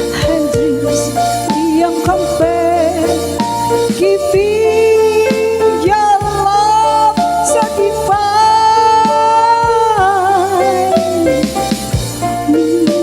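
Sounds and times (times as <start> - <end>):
bass: 0.0 - 13.0
drums: 0.0 - 13.0
keyboard: 0.0 - 13.0
rhythm guitar: 0.0 - 13.0
woman singing with vibrato: 0.0 - 13.0.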